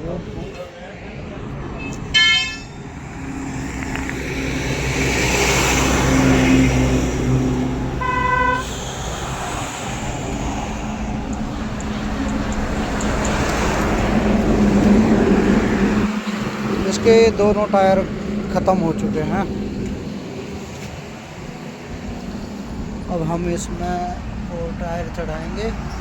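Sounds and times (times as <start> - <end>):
road traffic passing: 0.0 - 26.0
vehicle horn blast: 1.8 - 2.8, 7.9 - 8.8.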